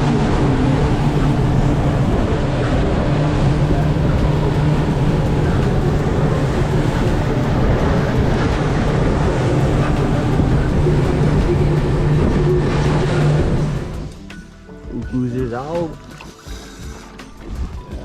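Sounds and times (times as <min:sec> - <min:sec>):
loud rushing noise: 0:00.0 - 0:14.2
boat engine hum: 0:00.0 - 0:18.0.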